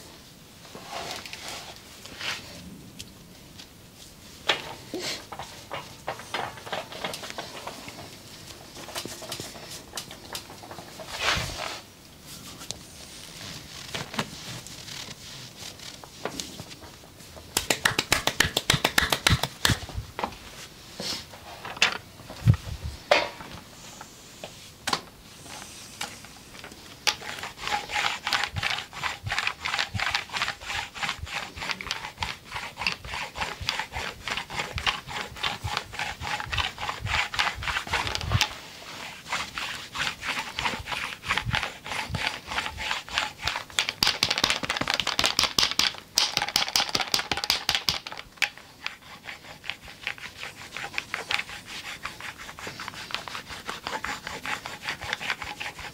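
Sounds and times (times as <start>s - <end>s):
rhythmic rubbing strokes: 5.3s - 21.2s, 27.1s - 43.8s, 48.6s - 55.9s
rapid massage taps: 17.4s - 20.3s, 43.5s - 48.6s.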